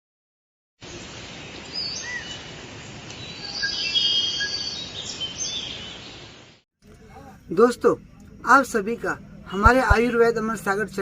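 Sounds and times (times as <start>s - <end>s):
steady background hiss: 0.8s - 11.0s
birds chirping and whistling: 1.5s - 2.5s, 3.1s - 6.4s.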